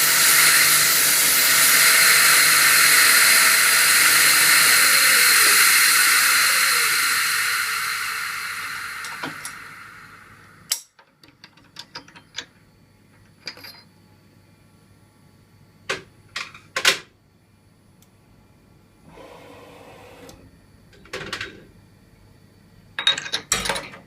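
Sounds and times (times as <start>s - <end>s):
brief steady whir: 0.0s - 10.7s.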